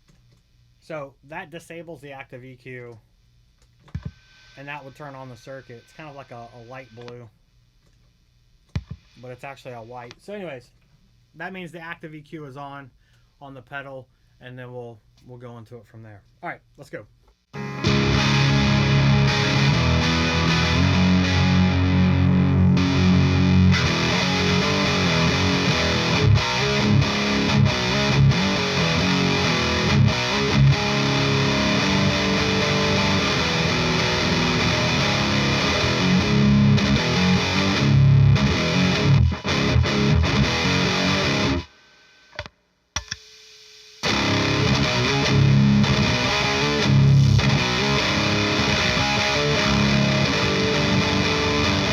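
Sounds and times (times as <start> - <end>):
overdriven electric guitar: 17.5 - 41.8, 44.0 - 51.9.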